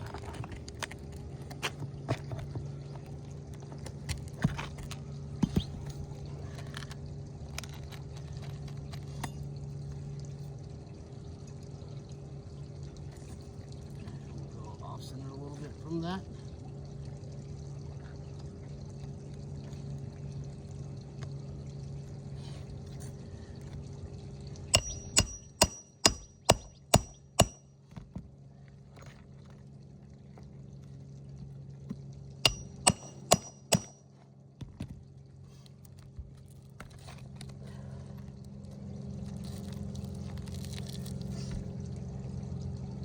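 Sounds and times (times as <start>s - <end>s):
steady low hum: 20.0s - 27.8s, 32.2s - 34.2s
hammer striking nail: 24.8s - 27.6s, 32.5s - 34.0s.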